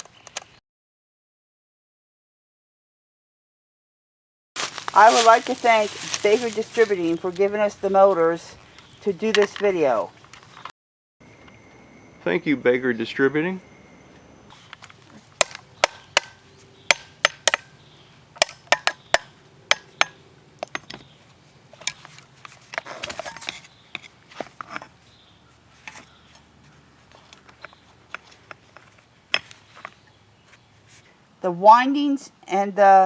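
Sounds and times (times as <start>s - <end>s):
scraping rustle: 4.6s - 10.7s, 20.7s - 31.2s
clicks and knocks of handled parts: 14.5s - 17.7s, 18.3s - 21.1s, 21.7s - 25.0s, 25.8s - 30.6s.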